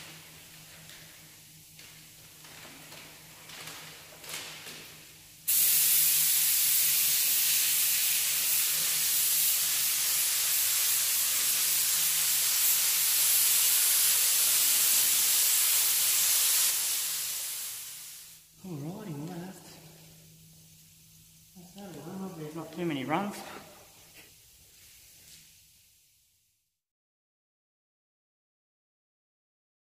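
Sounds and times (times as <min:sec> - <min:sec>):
paint spray gun hissing: 0:05.4 - 0:18.5.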